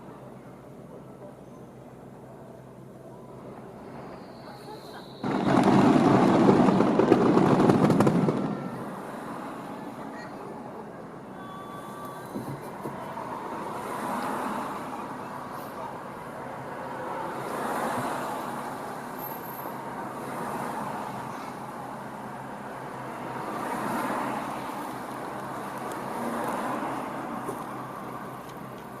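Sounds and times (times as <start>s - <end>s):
passing cars: 0.0s - 29.0s
fireworks crackling: 4.8s - 9.4s.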